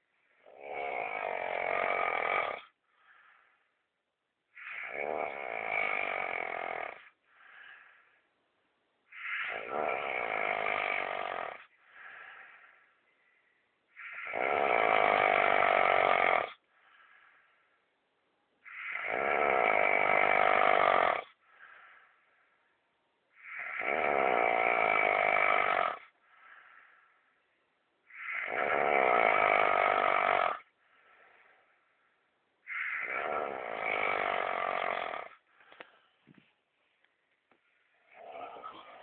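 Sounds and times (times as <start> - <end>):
person snoring: 0.4 - 3.4, 4.5 - 8.1, 9.1 - 13.0, 13.9 - 17.5, 18.6 - 22.3, 23.4 - 27.2, 28.1 - 31.8, 32.6 - 35.8, 38.0 - 39.0
soft breath out: 2.8 - 3.9, 7.2 - 8.4, 11.7 - 14.2, 16.6 - 17.8, 21.4 - 22.8, 26.2 - 27.4, 35.4 - 38.0.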